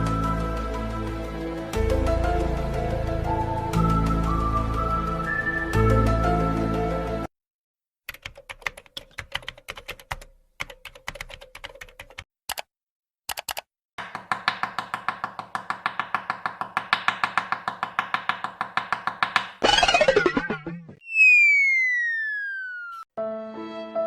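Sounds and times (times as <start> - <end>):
keyboard typing: 8.1 - 12.7, 13.3 - 19.6.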